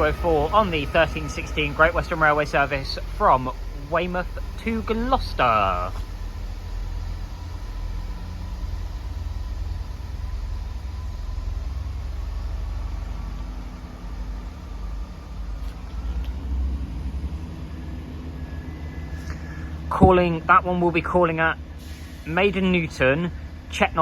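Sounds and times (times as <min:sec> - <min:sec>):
diesel train engine rumble: 0:00.0 - 0:24.0
faint engine whine: 0:00.0 - 0:24.0.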